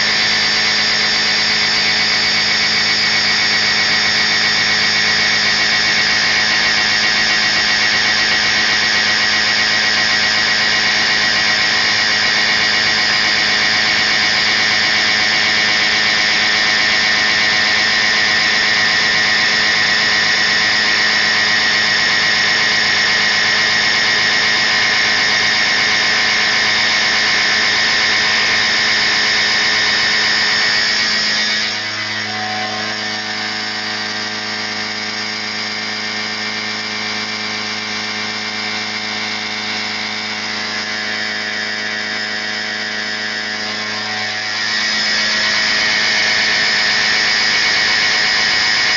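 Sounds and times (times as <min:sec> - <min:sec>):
machine hum: 0:00.0 - 0:15.3, 0:27.8 - 0:48.5
milling cutter squealing: 0:29.6 - 0:35.9, 0:43.6 - 0:47.5.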